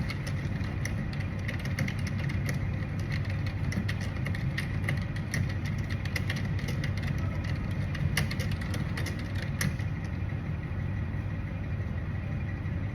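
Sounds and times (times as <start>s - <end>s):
computer keyboard typing: 0.0s - 10.1s
steady low hum: 0.0s - 12.9s.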